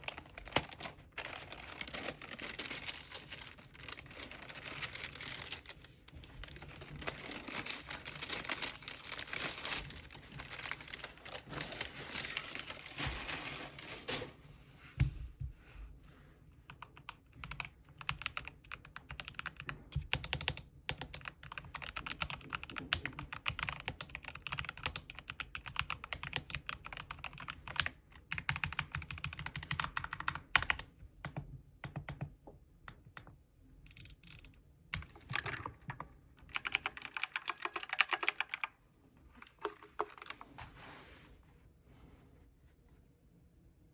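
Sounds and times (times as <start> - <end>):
mechanical keyboard clicks: 33.9 - 38.7.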